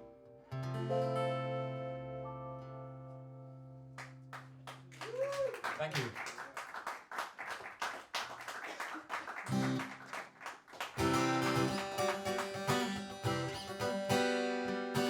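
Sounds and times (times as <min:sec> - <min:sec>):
guitar strummed chords: 0:00.0 - 0:03.9, 0:11.0 - 0:15.0
guitar picked notes: 0:00.0 - 0:04.0, 0:11.0 - 0:15.0
audience clapping: 0:04.0 - 0:13.7.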